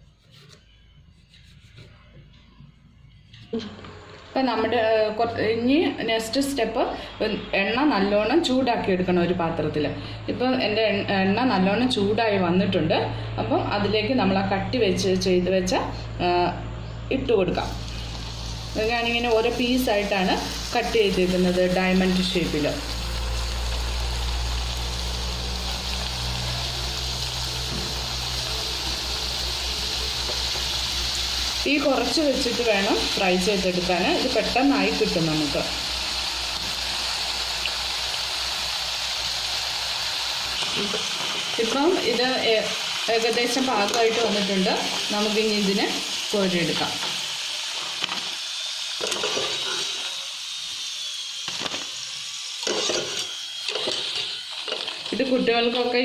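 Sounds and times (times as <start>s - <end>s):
dough sizzling in hot oil: 17.6s - 56.0s.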